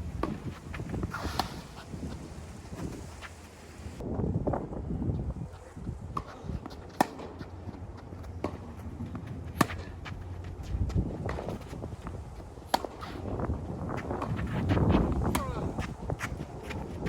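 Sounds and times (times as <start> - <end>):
wind rumble on microphone: 0.0 - 17.0
tennis ball struck by rackets: 0.2 - 1.8, 6.2 - 10.4, 11.2 - 13.2, 15.2 - 16.3
tennis ball bouncing: 0.2 - 3.0, 6.2 - 13.2, 14.0 - 17.0
footsteps on court: 5.1 - 17.0.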